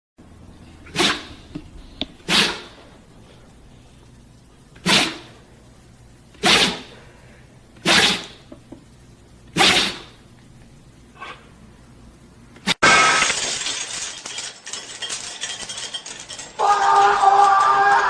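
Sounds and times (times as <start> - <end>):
dog sneezing: 0.9 - 1.4, 2.3 - 2.8, 4.8 - 5.3, 6.4 - 6.9, 7.8 - 8.4, 9.5 - 10.2.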